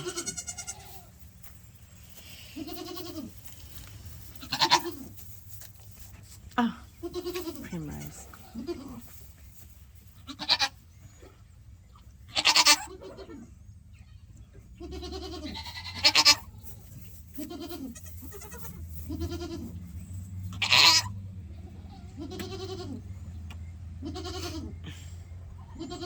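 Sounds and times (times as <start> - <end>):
goat crying out: 0.0 - 1.0, 4.4 - 5.1, 10.3 - 10.7, 12.4 - 13.4, 14.8 - 16.5, 17.4 - 19.8, 20.6 - 21.1, 21.9 - 23.0, 24.0 - 24.7, 25.6 - 26.0
soft low goat calls: 0.0 - 1.2, 2.2 - 5.3, 6.7 - 9.4, 14.7 - 19.9, 20.5 - 23.3, 24.0 - 26.0.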